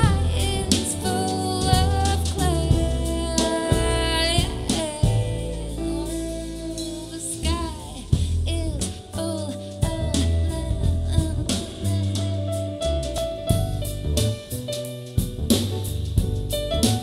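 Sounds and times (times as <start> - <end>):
person singing: 0.0 - 12.4
guitar: 0.0 - 17.0
steady bass line: 0.0 - 17.0.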